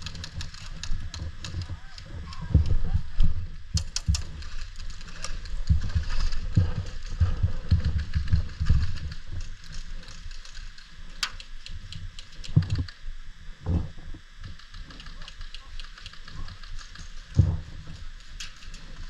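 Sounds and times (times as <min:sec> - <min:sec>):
gear rustling: 0:00.0 - 0:12.9, 0:14.4 - 0:19.0
small clicks: 0:08.8 - 0:13.0, 0:14.4 - 0:17.4.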